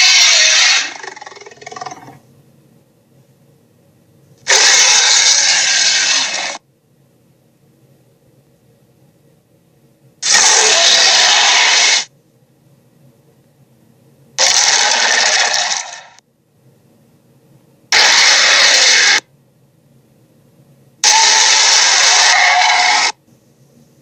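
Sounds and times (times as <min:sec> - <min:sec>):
dinosaur roars: 0:00.0 - 0:02.2, 0:04.5 - 0:06.6, 0:10.2 - 0:12.1, 0:14.4 - 0:16.2, 0:17.9 - 0:19.2, 0:21.0 - 0:23.2
faint low hum: 0:00.0 - 0:04.7, 0:06.2 - 0:10.8, 0:11.6 - 0:15.2, 0:15.9 - 0:22.0, 0:23.2 - 0:24.0.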